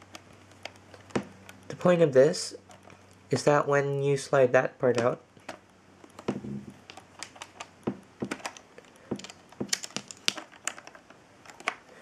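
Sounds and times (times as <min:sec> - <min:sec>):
plastic bricks clicking: 0:05.0 - 0:11.8.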